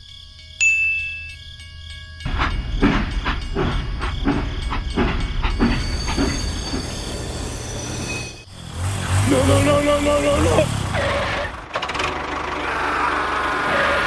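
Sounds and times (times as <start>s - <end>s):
chime-like tones: 0.0s - 3.7s
regular mechanical knocking: 2.3s - 7.2s.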